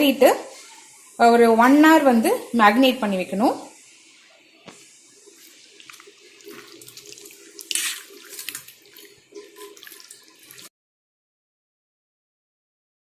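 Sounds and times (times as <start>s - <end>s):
wet squishing of chicken in marinade: 5.4s - 10.7s.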